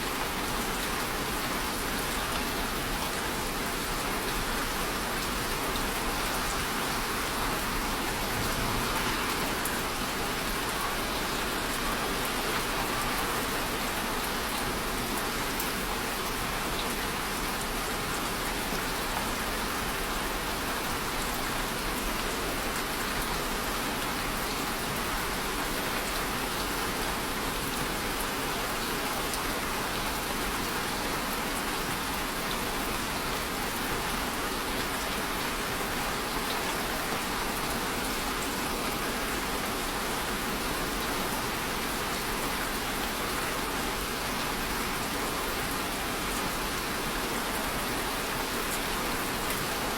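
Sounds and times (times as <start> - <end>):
steady rain falling: 0.0 - 49.9.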